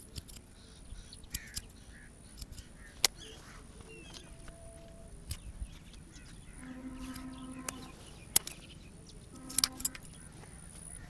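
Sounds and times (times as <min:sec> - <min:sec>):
short pitched hums: 0:06.4 - 0:10.3.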